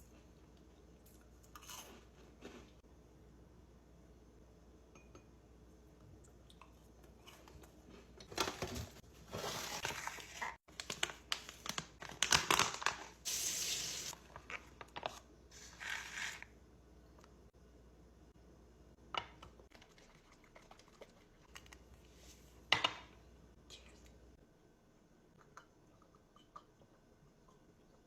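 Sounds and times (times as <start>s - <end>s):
food and packaging crunching: 7.3s - 13.2s.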